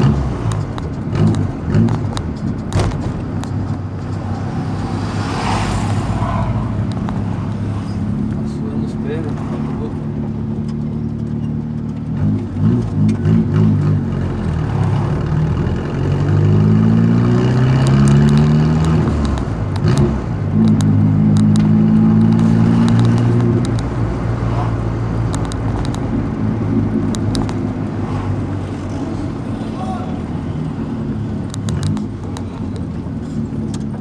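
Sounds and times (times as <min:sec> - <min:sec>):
car engine and exhaust rumbling: 0:00.0 - 0:34.0.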